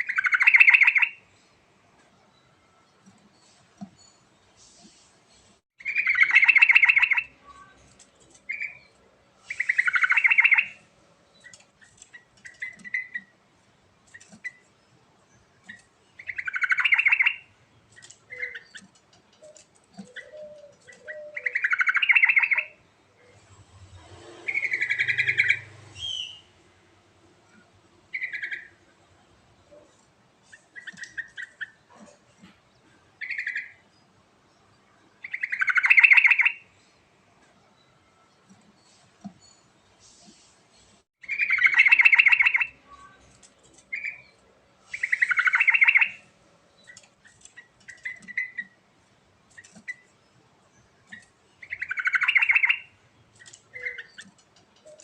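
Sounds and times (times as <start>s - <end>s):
bird warbling song: 0.0s - 1.2s, 5.8s - 7.8s, 8.4s - 13.4s, 14.0s - 26.6s, 27.5s - 29.0s, 29.6s - 37.0s, 41.2s - 48.8s, 49.4s - 55.0s.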